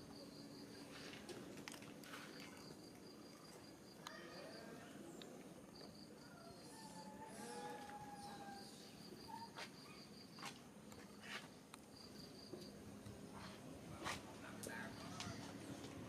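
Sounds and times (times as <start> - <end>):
insect chirping: 0.0 - 1.1, 2.2 - 12.8
faint held calls: 6.2 - 9.7.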